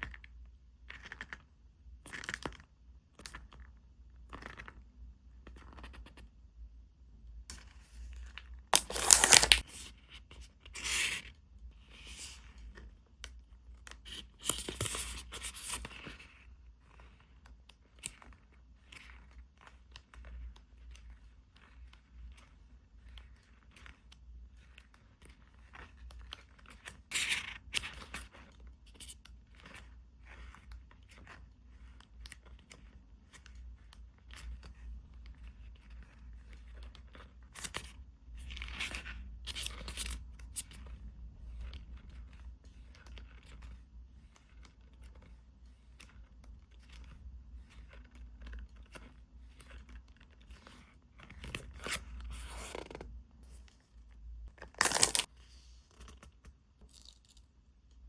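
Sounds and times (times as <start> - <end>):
packaging crinkling and tapping: 8.8 - 9.6, 54.6 - 55.3
rustling and tearing: 8.8 - 9.8, 54.6 - 55.3.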